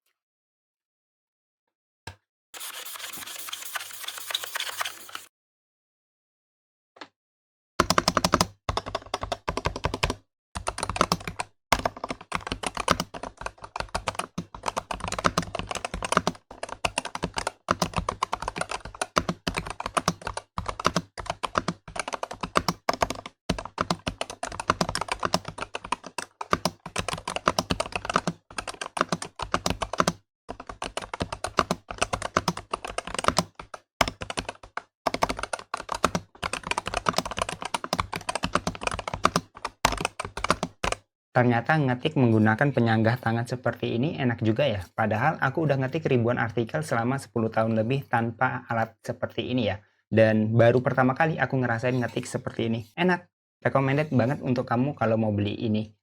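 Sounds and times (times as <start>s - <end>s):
mechanical keyboard typing: 2.6s - 5.3s, 7.8s - 41.0s.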